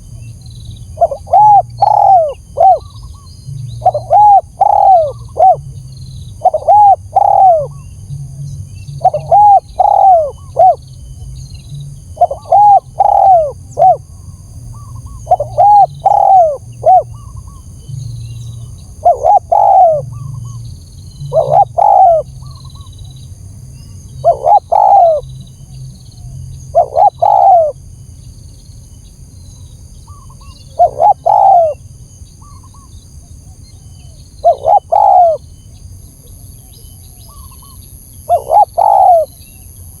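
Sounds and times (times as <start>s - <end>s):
dove cooing: 0.9s - 10.9s, 11.7s - 20.6s, 21.2s - 22.9s, 24.2s - 25.3s, 26.2s - 27.8s, 30.1s - 31.8s, 34.0s - 35.4s, 37.2s - 39.4s.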